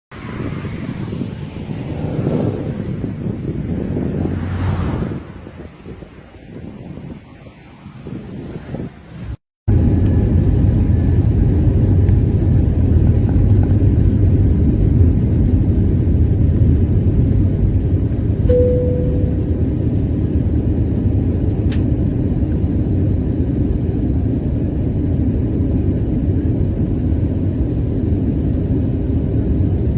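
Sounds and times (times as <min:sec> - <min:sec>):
airliner engine and airflow rumble: 0:00.1 - 0:29.9
short cabin tone: 0:18.4 - 0:20.0.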